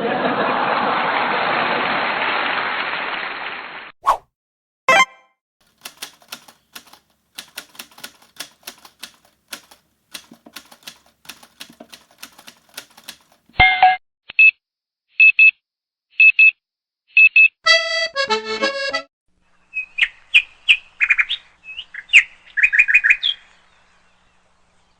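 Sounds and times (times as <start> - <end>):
electronic chirps: 4.9 - 5.2
short electronic beeps: 4.9 - 5.3
sharp typing-like clicks: 5.6 - 13.6.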